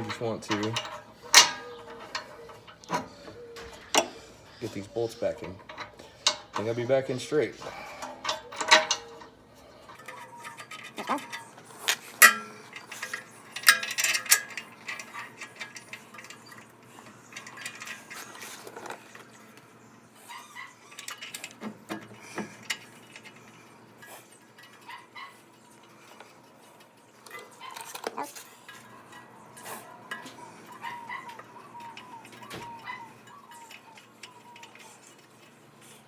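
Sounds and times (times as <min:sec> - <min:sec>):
tools and bolts clinking on metal: 0:00.0 - 0:36.0.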